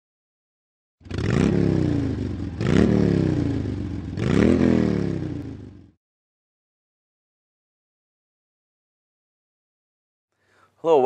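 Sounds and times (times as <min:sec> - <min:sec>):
motorcycle engine revving: 0:01.0 - 0:06.0.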